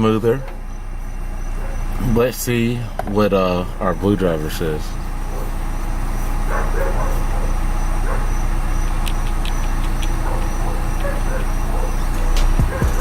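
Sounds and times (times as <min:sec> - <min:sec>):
car engine idling: 0:00.0 - 0:13.0
light clicks: 0:08.9 - 0:13.0.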